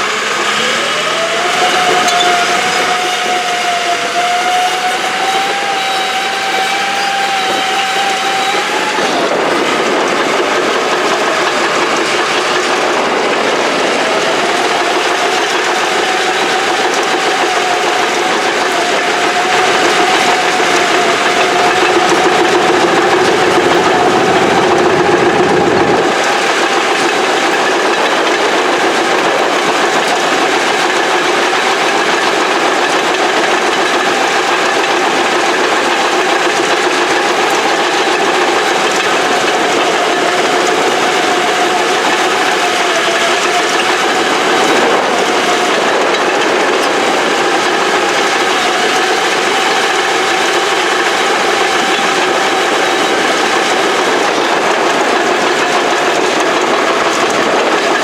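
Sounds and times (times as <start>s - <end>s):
deep engine rumble: 0.0s - 31.6s
diesel engine clattering: 0.0s - 58.0s
wavering whine: 0.0s - 58.0s.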